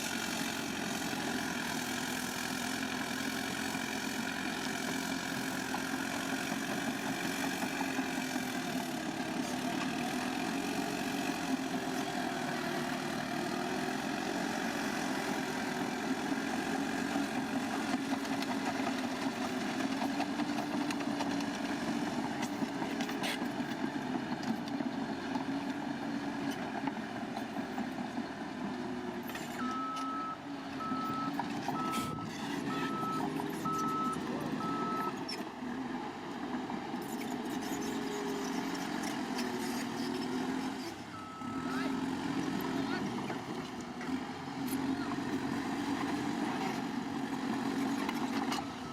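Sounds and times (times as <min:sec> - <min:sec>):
bulldozer diesel engine running: 0:00.0 - 0:48.9
reversing alarm beeping: 0:29.6 - 0:35.2.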